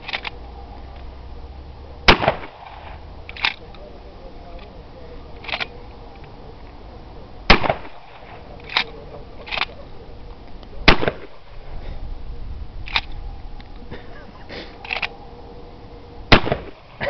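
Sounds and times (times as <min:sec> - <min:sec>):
shotgun pump racking clacks: 0:00.0 - 0:00.4, 0:03.3 - 0:03.7, 0:05.4 - 0:05.7, 0:08.6 - 0:09.8
shotgun shots: 0:02.1 - 0:03.6, 0:07.5 - 0:09.8, 0:10.8 - 0:11.6, 0:16.3 - 0:17.0.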